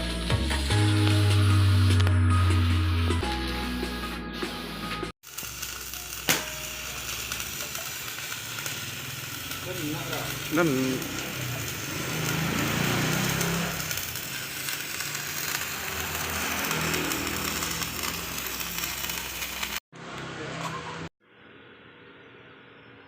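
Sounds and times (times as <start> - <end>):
power tool cutting steel: 5.2 - 21.1.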